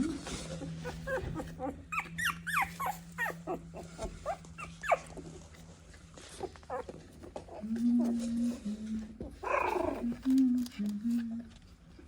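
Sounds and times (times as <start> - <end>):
puppies squeaking and whimpering: 0.6 - 5.2.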